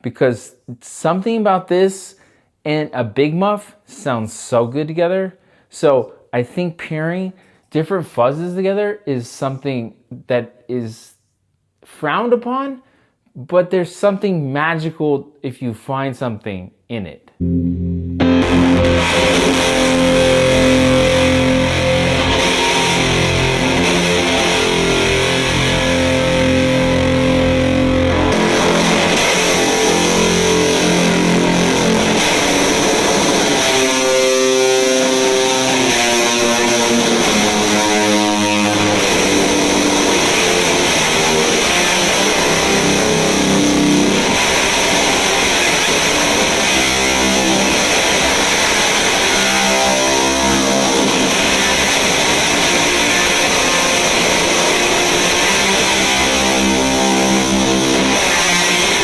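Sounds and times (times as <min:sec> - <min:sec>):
distorted electric guitar: 0:17.4 - 0:59.0.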